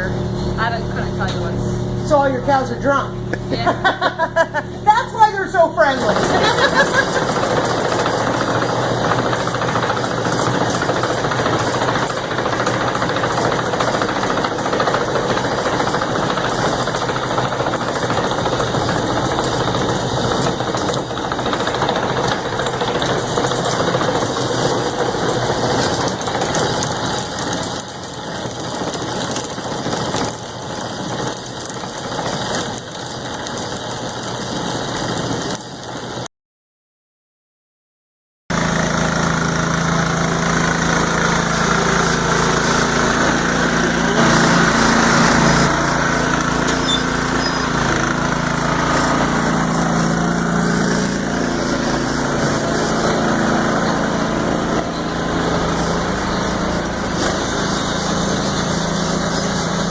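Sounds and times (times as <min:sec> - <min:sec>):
farm machinery clattering: 0:05.9 - 0:32.6, 0:40.2 - 0:59.9.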